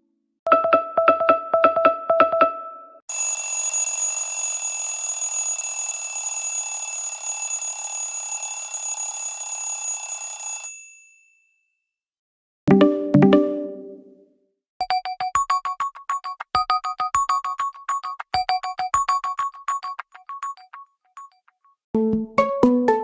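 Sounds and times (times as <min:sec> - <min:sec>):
telephone bell ringtone: 0:03.1 - 0:11.6, 0:18.5 - 0:21.4
short repeated ringtone beeps: 0:14.8 - 0:21.6.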